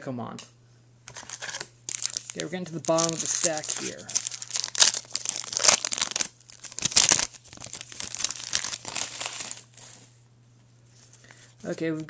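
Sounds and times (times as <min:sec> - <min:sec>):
faint steady hum: 0:00.0 - 0:12.0
packaging crinkling and rustling: 0:01.1 - 0:10.0.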